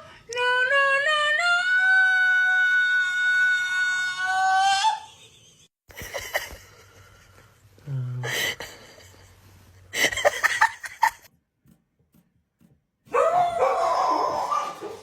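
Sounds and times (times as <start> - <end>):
dog barking: 13.1 - 15.0
dog's long wavering cry: 13.2 - 15.0.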